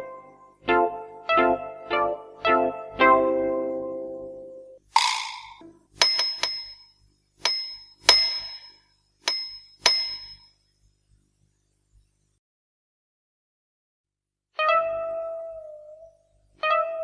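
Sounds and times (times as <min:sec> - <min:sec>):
bright bell-like dings: 0:05.4 - 0:10.6.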